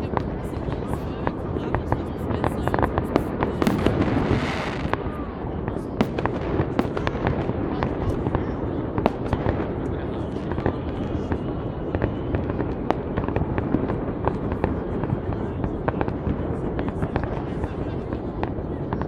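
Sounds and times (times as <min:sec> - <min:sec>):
fireworks bangs and crackles: 0:00.0 - 0:19.0
low rumble: 0:03.6 - 0:07.2.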